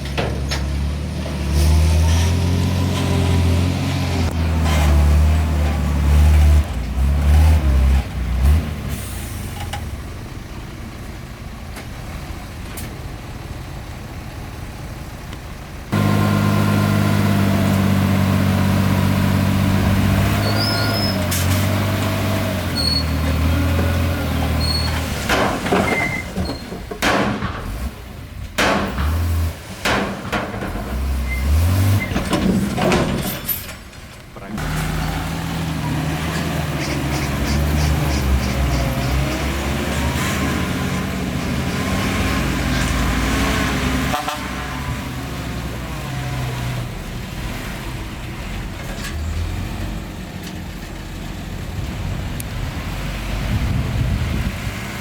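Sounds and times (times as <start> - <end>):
heavy diesel engines running: 0.0 - 55.0
loud engine drone: 15.9 - 24.8.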